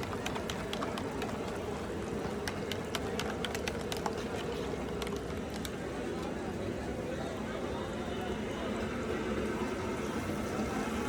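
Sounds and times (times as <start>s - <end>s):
traffic din: 0.0s - 11.0s.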